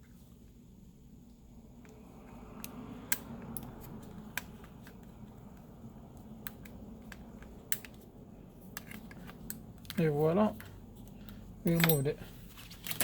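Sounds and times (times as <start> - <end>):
handling noise: 3.1 - 13.0.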